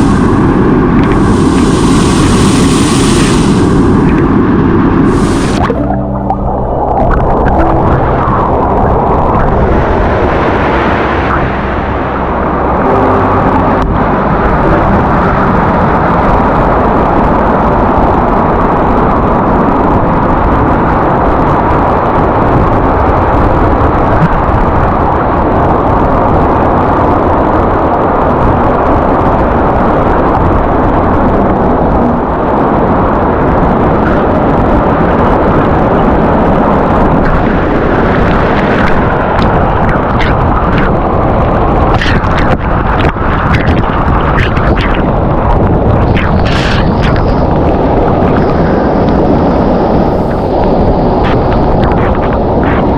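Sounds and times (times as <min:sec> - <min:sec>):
waterfall rushing: 0:00.0 - 0:17.8.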